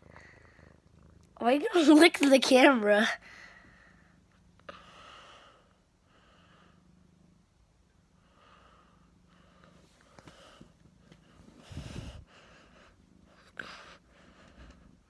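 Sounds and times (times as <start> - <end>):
faint breathing: 3.2 - 7.0, 8.2 - 10.8, 11.6 - 15.0.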